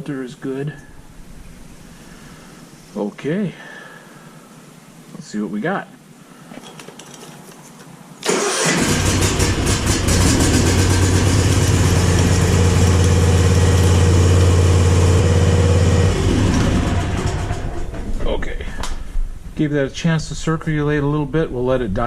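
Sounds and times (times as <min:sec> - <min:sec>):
lawn mower engine running: 0:08.2 - 0:18.2.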